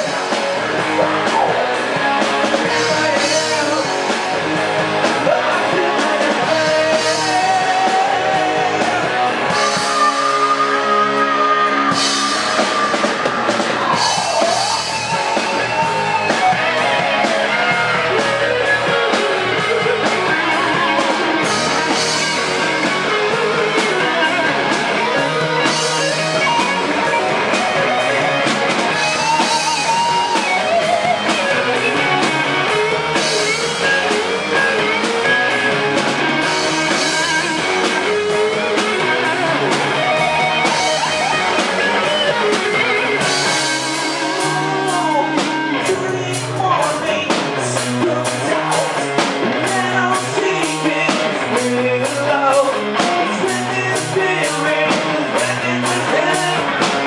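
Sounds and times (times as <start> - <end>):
lead guitar bending notes: 0.0 - 52.2
rock band playing: 0.0 - 57.0.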